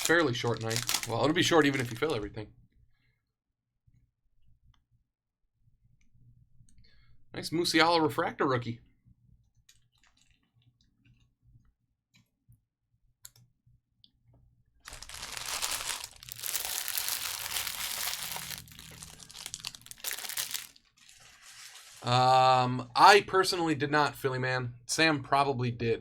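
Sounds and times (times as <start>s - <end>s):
wrappers crinkling and tearing: 0.0s - 2.2s, 14.9s - 22.1s.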